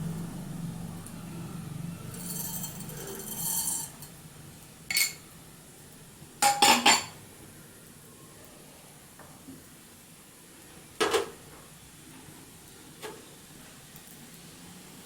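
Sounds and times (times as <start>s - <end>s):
low steady hum: 0.0s - 7.2s
utensils clinking on metal cookware: 2.1s - 4.2s, 4.9s - 5.3s, 6.4s - 7.2s.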